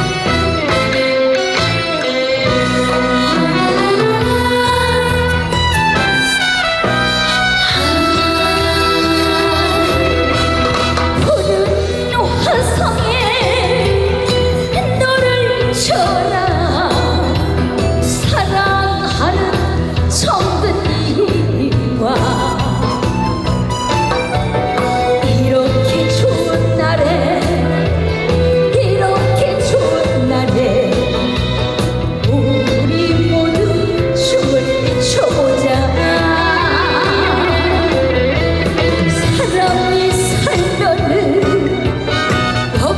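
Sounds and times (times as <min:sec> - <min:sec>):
woman singing with vibrato: 0:00.0 - 0:23.4, 0:24.5 - 0:42.9
live band playing: 0:00.0 - 0:42.9.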